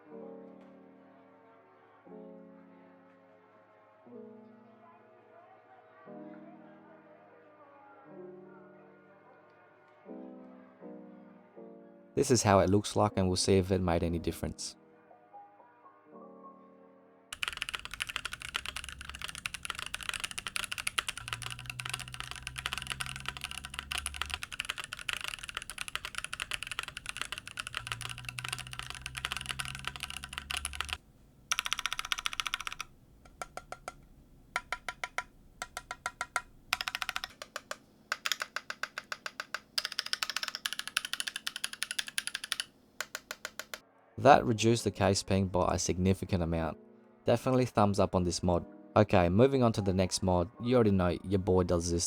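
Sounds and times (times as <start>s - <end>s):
mechanical keyboard typing: 17.4s - 43.8s.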